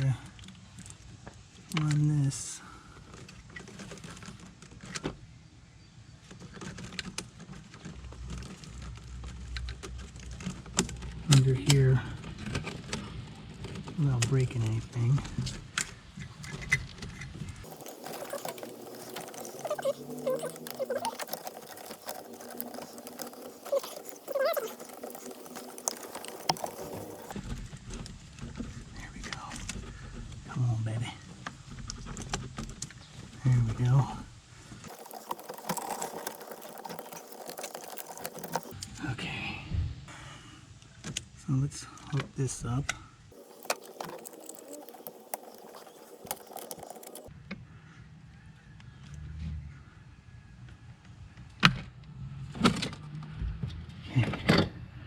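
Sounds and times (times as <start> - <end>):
plastic tube rustling and scraping: 3.0 - 5.0, 6.2 - 15.5, 16.2 - 30.2, 34.7 - 38.8, 43.4 - 47.3.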